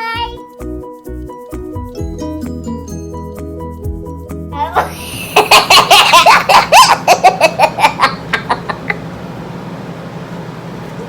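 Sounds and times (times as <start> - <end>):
child giggling: 4.6 - 9.1.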